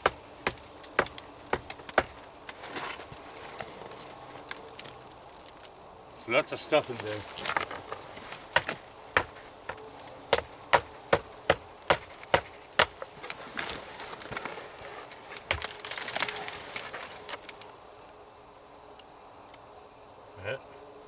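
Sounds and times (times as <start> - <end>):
stones clinking together: 0.0 - 3.0, 7.0 - 13.1, 15.4 - 17.7
scraping and rustling: 0.0 - 10.3, 12.6 - 17.8.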